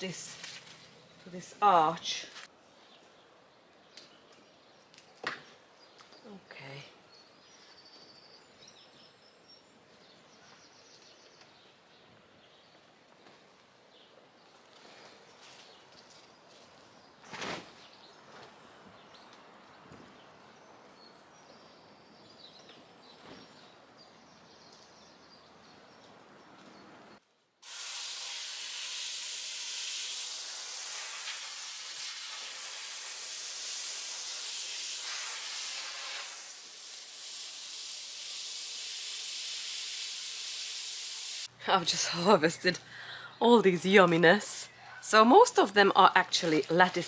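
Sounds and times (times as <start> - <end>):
steady loud hiss: 27.6 - 41.5.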